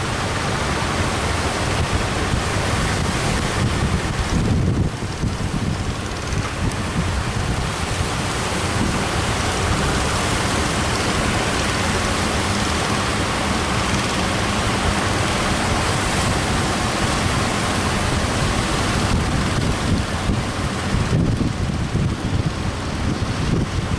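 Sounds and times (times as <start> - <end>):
heavy surf breaking: 0.0 - 23.9
wind buffeting microphone: 0.0 - 23.9.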